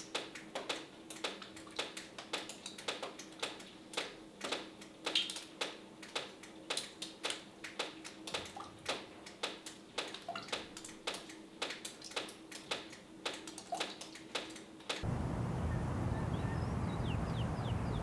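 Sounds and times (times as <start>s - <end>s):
faint steady hum: 15.0s - 18.0s.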